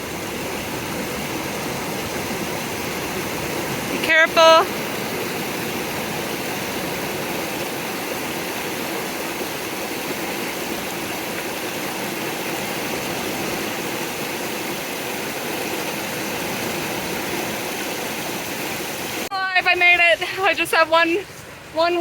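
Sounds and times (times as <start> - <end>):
river rushing: 0.0 - 22.0.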